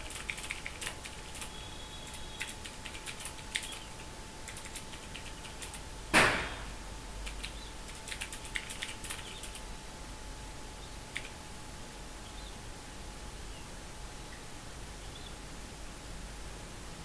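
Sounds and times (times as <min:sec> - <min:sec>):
mechanical keyboard keys clicking: 0:00.0 - 0:01.5, 0:02.1 - 0:03.9, 0:04.5 - 0:05.8, 0:07.2 - 0:09.6, 0:11.1 - 0:11.4.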